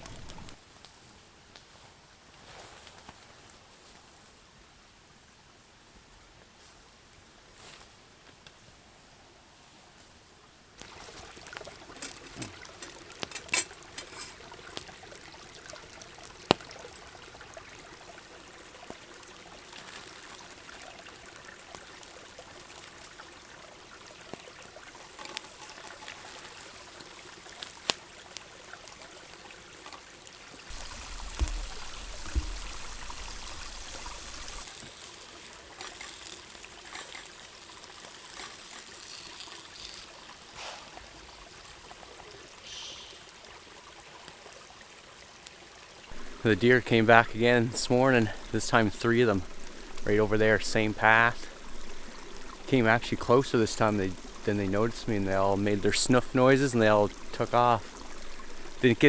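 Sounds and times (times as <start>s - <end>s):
low bumps: 0.0s - 0.6s, 30.7s - 34.7s, 46.1s - 59.0s
river water running: 0.0s - 0.6s, 10.8s - 59.0s
sharp clicks and knocks: 30.7s - 34.7s.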